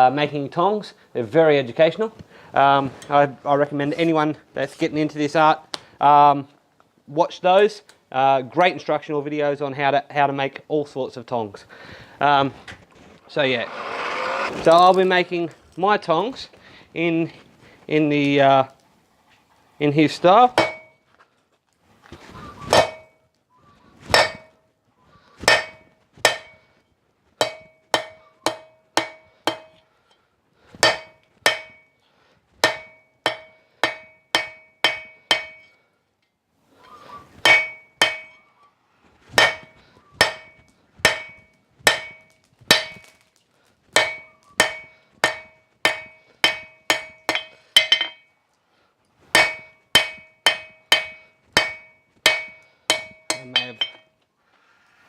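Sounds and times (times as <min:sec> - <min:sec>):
hammer striking steel on anvil: 0:20.5 - 0:21.0, 0:22.7 - 0:23.2, 0:24.1 - 0:24.6, 0:25.4 - 0:26.7, 0:27.4 - 0:29.8, 0:30.8 - 0:32.0, 0:32.6 - 0:35.8, 0:37.4 - 0:38.4, 0:39.4 - 0:43.2, 0:44.0 - 0:48.3, 0:49.3 - 0:54.1.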